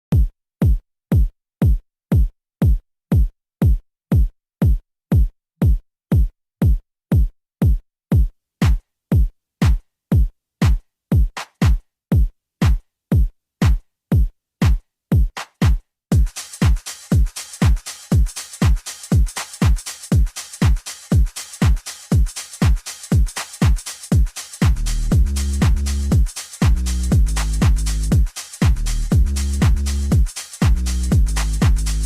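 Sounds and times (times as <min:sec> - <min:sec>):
electronic kick drum beating: 0:00.1 - 0:32.0
dance track: 0:15.6 - 0:32.0.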